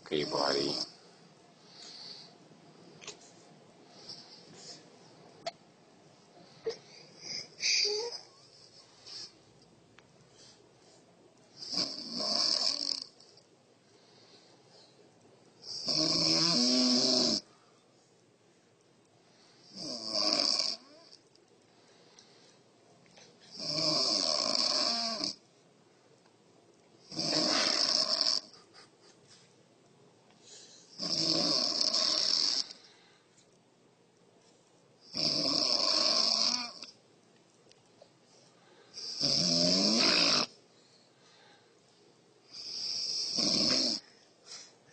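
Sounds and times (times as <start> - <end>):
woman snoring loudly: 11.6 - 13.1, 15.7 - 17.4, 19.7 - 21.0, 23.6 - 25.4, 27.1 - 28.5, 31.0 - 32.8, 35.1 - 36.9, 39.0 - 40.5, 42.6 - 44.0.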